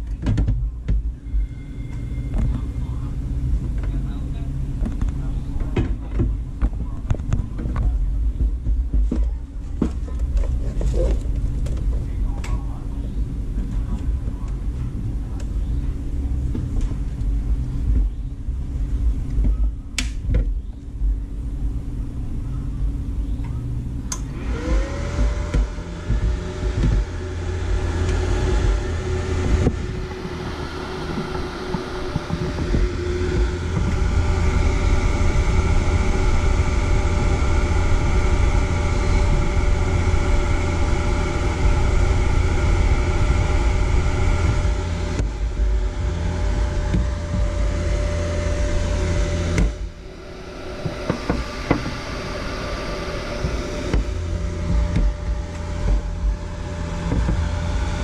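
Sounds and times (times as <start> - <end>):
constant low rumble: 0.0 - 58.0
small motor humming: 22.9 - 58.0.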